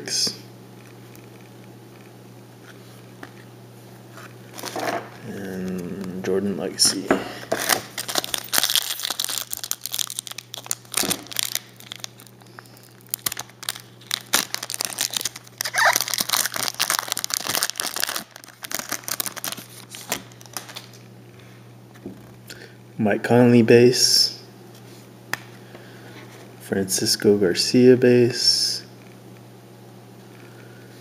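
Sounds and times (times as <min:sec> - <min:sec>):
wrapper tearing and crinkling: 0:04.5 - 0:06.1, 0:07.5 - 0:21.0.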